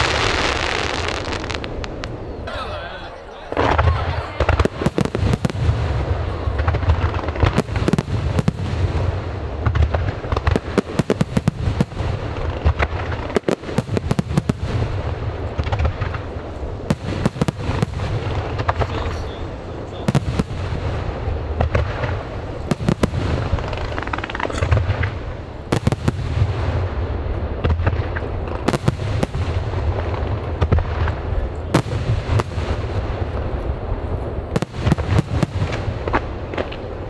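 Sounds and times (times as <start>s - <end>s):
low rumble and crackle: 0.0s - 37.0s
fireworks shells bursting: 22.2s - 25.3s.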